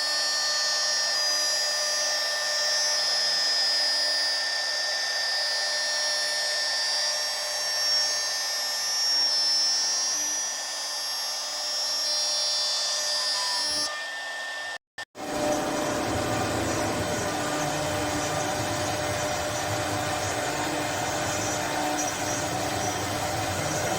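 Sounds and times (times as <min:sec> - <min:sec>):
woodworking machine motor whine: 0:00.0 - 0:23.9
low machine hum: 0:15.2 - 0:23.9.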